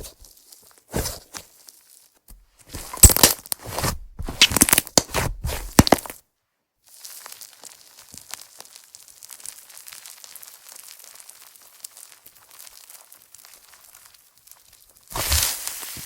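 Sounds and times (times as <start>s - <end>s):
slime crackling pops: 4.3s - 6.2s.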